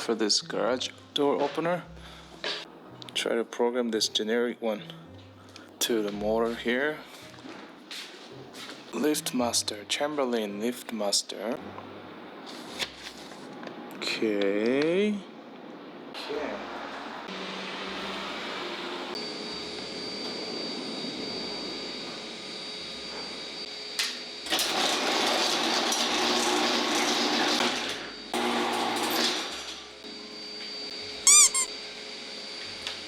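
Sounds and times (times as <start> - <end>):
garage door opener motor: 16.8 - 33.0
short loud beeps: 31.3 - 31.7.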